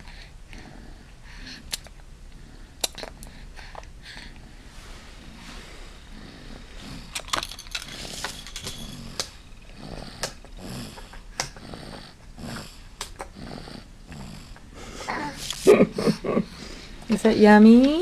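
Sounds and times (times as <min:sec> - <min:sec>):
person snoring: 0:05.2 - 0:07.1, 0:07.9 - 0:16.9.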